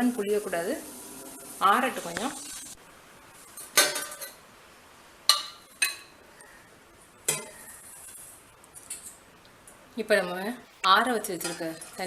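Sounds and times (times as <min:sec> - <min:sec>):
kitchen utensils clinking: 0:03.6 - 0:04.4, 0:11.2 - 0:12.0.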